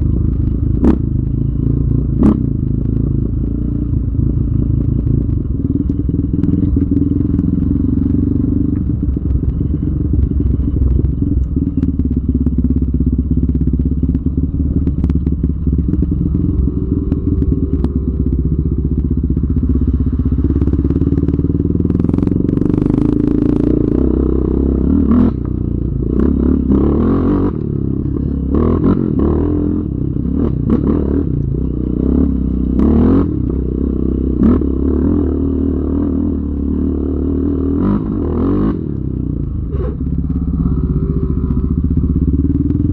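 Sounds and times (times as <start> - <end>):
quad bike engine revving: 19.8 - 39.0.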